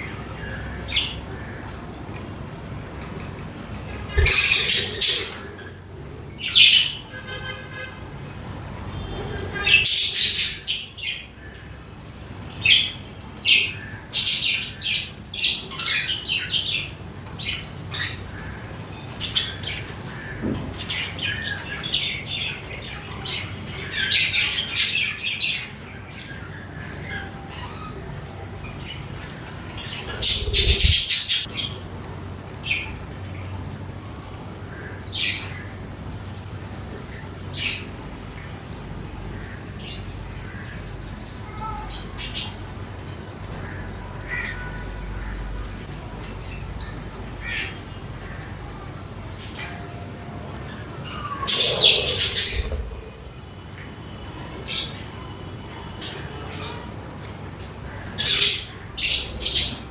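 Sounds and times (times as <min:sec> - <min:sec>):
budgerigars chirping and squawking: 0:03.0 - 0:05.8, 0:09.4 - 0:11.2, 0:12.6 - 0:31.7, 0:50.8 - 0:53.2, 0:57.8 - 0:59.9.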